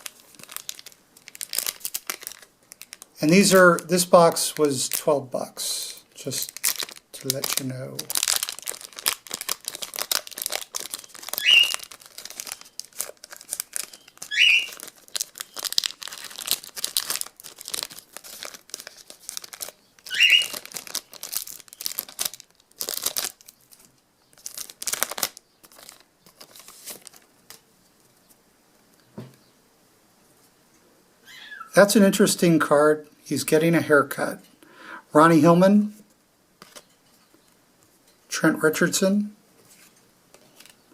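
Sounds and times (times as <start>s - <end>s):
foil wrappers crinkling and tearing: 0.0s - 5.1s, 5.7s - 27.6s, 39.7s - 40.9s.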